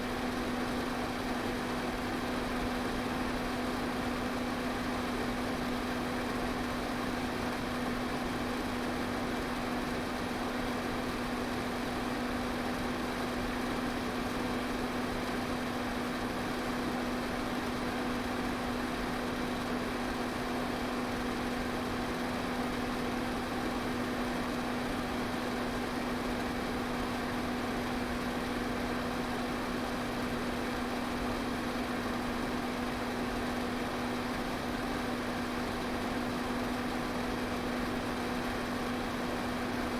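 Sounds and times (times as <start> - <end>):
electric fan running: 0.0 - 39.9.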